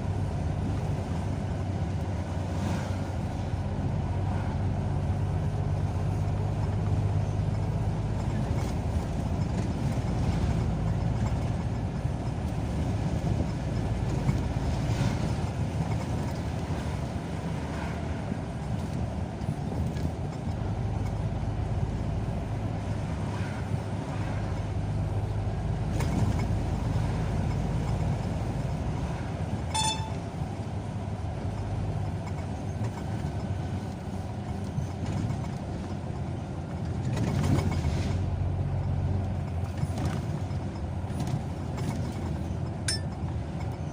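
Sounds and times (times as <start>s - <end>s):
vehicle engine and road noise: 0.0s - 43.9s
short high beep: 29.7s - 30.2s.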